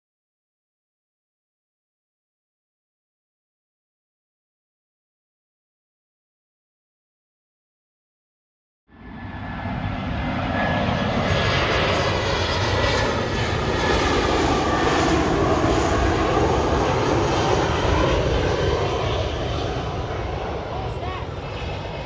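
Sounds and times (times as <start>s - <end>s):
jet airliner passing: 8.9s - 22.0s.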